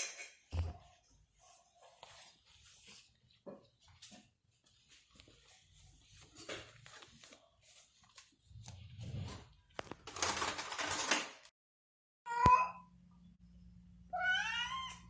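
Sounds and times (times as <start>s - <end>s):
rustling and scuffling: 0.6s - 11.3s.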